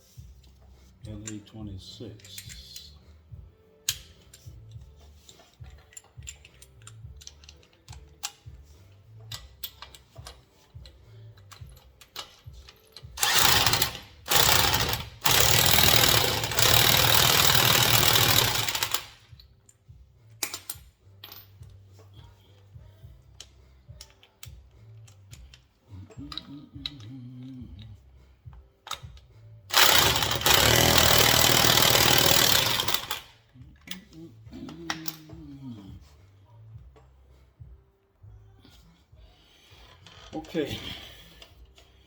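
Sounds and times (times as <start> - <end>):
metallic clicks and taps of tools: 0.4 - 3.0, 3.8 - 13.2, 18.9 - 21.8, 23.3 - 29.4
power tool running: 13.2 - 19.2, 29.7 - 33.3.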